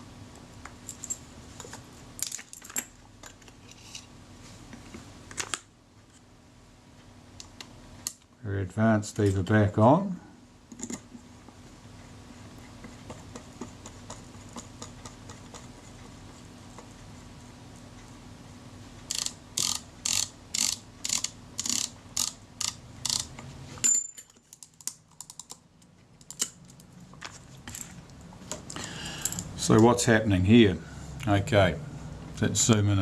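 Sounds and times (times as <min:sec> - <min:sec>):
camera film advance lever clicks: 0:19.1 - 0:23.3.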